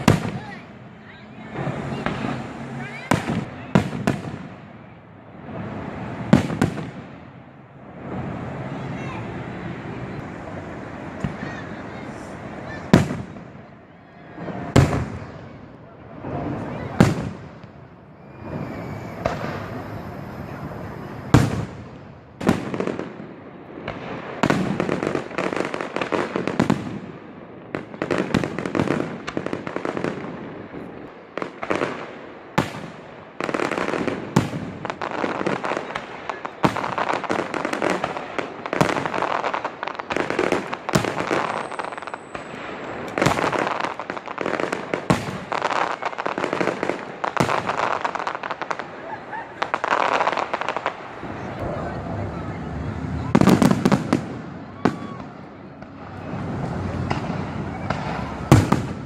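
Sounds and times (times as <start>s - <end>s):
firework shells booming: 0.0s - 0.8s, 1.5s - 4.8s, 5.4s - 7.4s, 12.7s - 13.7s, 14.4s - 20.6s, 21.2s - 51.8s, 53.2s - 59.0s
fireworks crackling and hiss: 0.0s - 59.0s.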